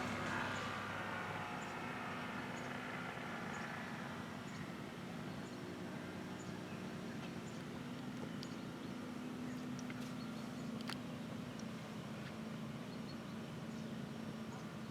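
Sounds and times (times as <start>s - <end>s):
grass trimmer engine droning: 0.0s - 4.0s.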